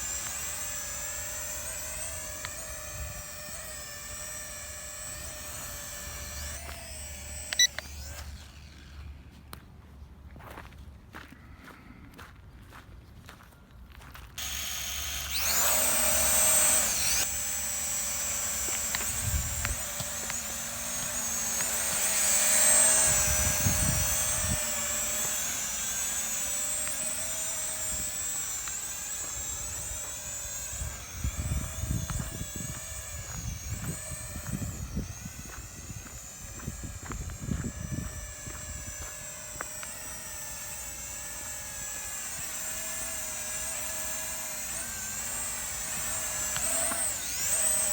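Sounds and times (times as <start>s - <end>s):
drone propellers whining: 0.0s - 9.2s, 14.4s - 47.9s
wind buffeting microphone: 23.0s - 24.8s, 30.6s - 39.5s.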